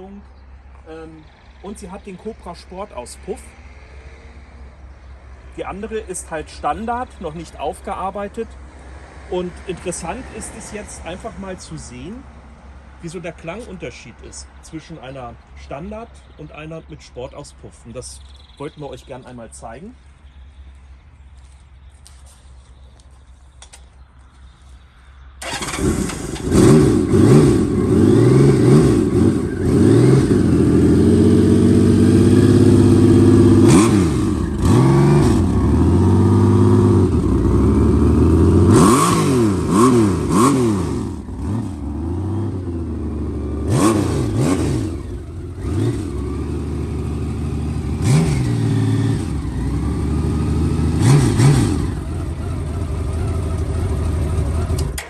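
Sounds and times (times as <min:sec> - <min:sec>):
motorcycle engine revving: 0:25.4 - 0:55.0
motorcycle engine starting: 0:25.4 - 0:55.0.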